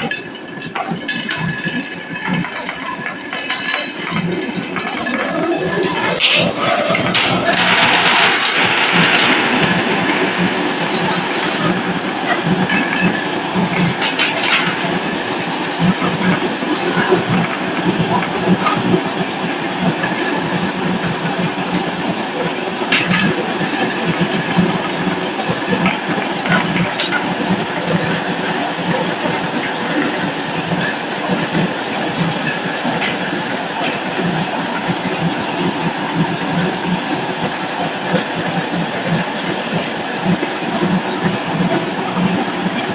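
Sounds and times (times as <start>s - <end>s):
marbles rattling down wooden track: 5.1s - 15.3s.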